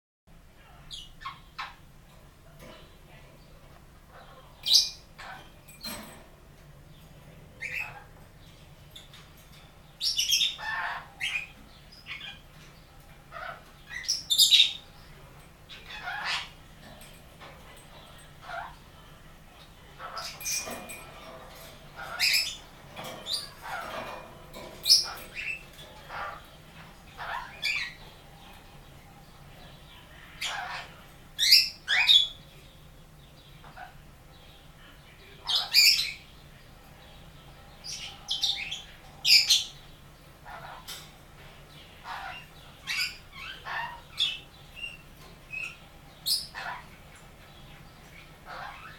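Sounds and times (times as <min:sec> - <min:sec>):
parrot squawking and chirping: 0:04.1 - 0:05.8, 0:07.6 - 0:08.1, 0:10.0 - 0:12.4, 0:13.3 - 0:14.9, 0:15.7 - 0:16.7, 0:18.3 - 0:18.8, 0:20.0 - 0:28.7, 0:30.2 - 0:32.4, 0:35.4 - 0:36.2, 0:40.4 - 0:41.1, 0:42.0 - 0:47.2, 0:48.1 - 0:48.9.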